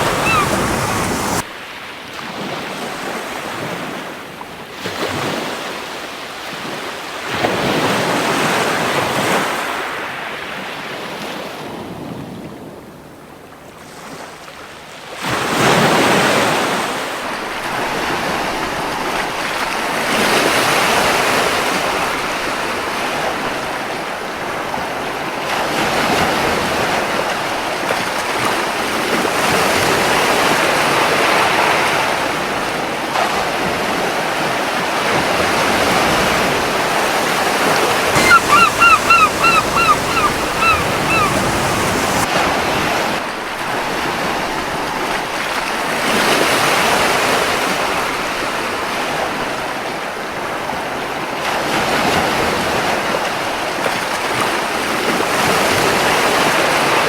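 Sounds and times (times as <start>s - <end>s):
gull calling: 0.0s - 1.4s, 38.1s - 42.3s
ocean surf washing onto beach: 0.0s - 1.4s, 37.2s - 42.3s.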